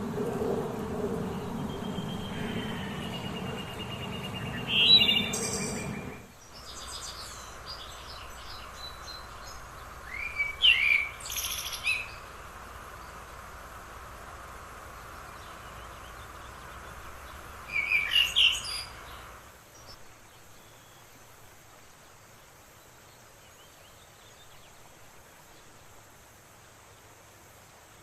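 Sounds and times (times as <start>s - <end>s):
faint chirps from other birds: 0.0s - 21.2s
songbird chirping: 0.0s - 21.2s
steady hiss: 0.0s - 28.0s.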